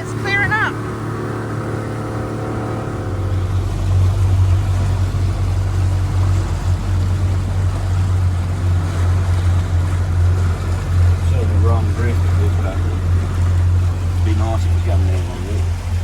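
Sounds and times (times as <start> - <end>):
motorboat engine running: 0.0 - 16.0.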